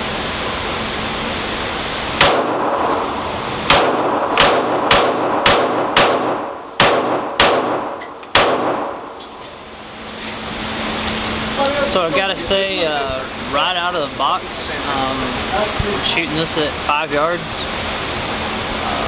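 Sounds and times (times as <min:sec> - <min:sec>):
pistol shots: 0:02.2 - 0:02.9, 0:03.6 - 0:09.0.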